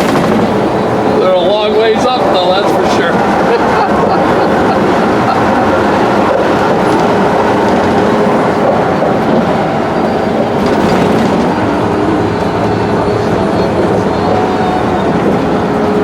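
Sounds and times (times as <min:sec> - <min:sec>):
tyre and drivetrain rumble: 0:00.0 - 0:16.0.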